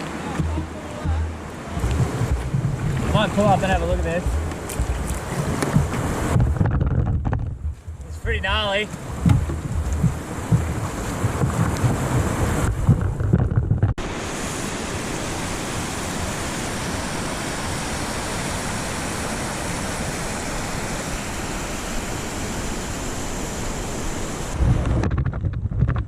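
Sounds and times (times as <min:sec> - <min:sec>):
river rapids rushing: 0:00.0 - 0:06.4, 0:14.0 - 0:24.6
wind buffeting microphone: 0:00.0 - 0:14.0, 0:24.4 - 0:26.0.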